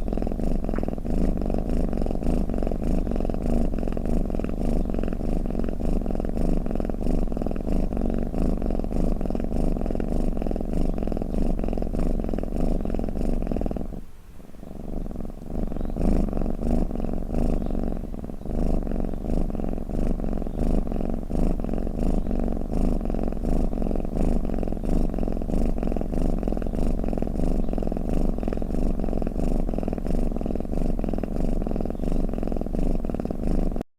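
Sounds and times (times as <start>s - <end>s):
cat purring: 0.0s - 33.9s.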